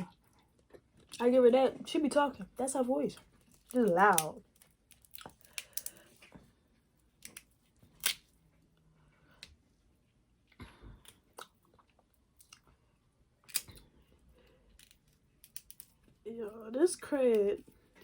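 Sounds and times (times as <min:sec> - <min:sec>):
crab legs cracking open: 0:03.5 - 0:06.1, 0:07.2 - 0:08.3, 0:13.4 - 0:13.8.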